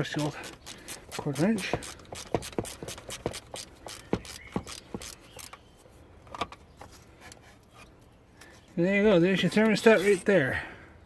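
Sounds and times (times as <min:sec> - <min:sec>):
ratchet clicking: 0:00.0 - 0:05.6.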